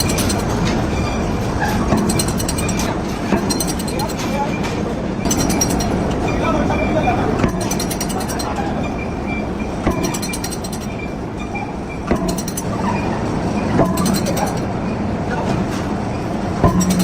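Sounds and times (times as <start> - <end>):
metallic clinking: 0.0 - 0.6, 1.9 - 4.4, 5.2 - 6.5, 7.4 - 8.6, 9.8 - 11.2, 12.0 - 13.0, 13.8 - 14.7, 16.6 - 17.0
sharp knocks: 7.4 - 8.6, 9.8 - 11.0, 12.0 - 12.8, 13.8 - 14.7, 16.6 - 17.0.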